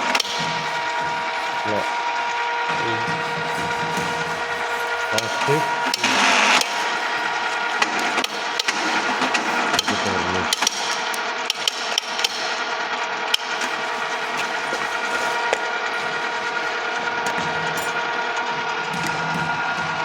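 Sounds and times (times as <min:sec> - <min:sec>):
milling machine spindle whine: 0:00.0 - 0:20.0.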